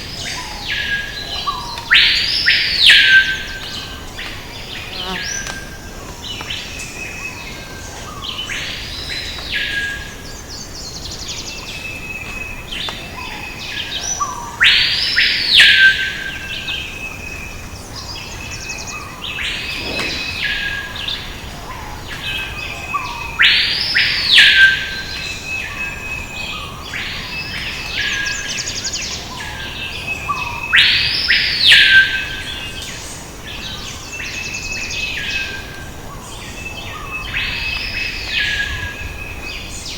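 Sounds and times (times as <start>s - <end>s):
birds chirping and whistling: 18.6s - 21.2s
loud arching bird whistles: 19.6s - 20.9s.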